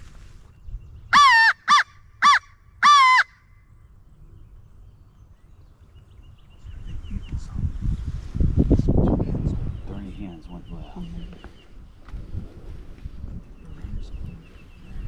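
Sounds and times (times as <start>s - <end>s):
low rustling: 0.0s - 0.7s
crow-like caws: 1.2s - 3.3s.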